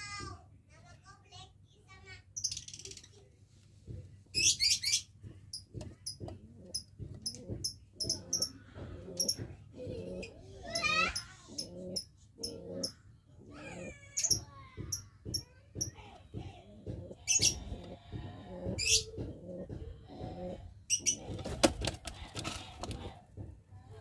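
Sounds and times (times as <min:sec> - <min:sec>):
pigeons cooing: 0:06.2 - 0:13.9, 0:16.5 - 0:23.3.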